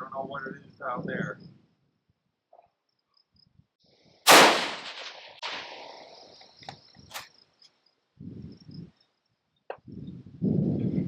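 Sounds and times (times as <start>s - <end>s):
rifle shot echoing: 4.3s - 6.2s.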